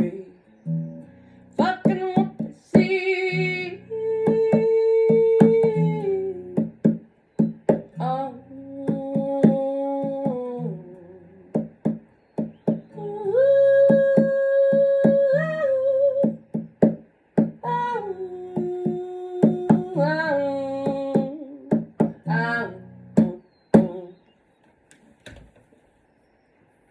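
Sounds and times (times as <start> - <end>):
wordless singing: 0.0 - 0.7, 1.5 - 6.9, 7.9 - 11.7, 12.5 - 16.6, 17.6 - 24.4
strummed guitar: 0.0 - 24.1.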